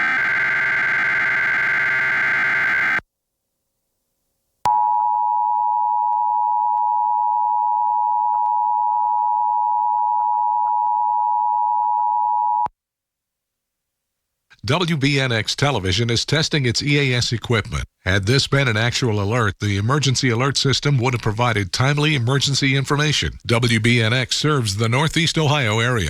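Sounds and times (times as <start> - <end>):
harsh digital warble: 0.0 - 3.0.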